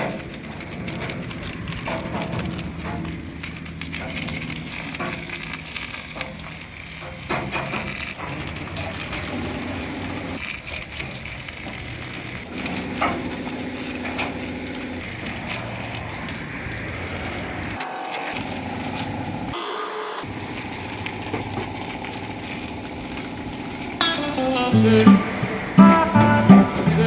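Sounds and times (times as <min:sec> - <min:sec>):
water spray hissing on truck: 0:00.0 - 0:19.6, 0:20.2 - 0:25.8
low machine hum: 0:20.3 - 0:27.0.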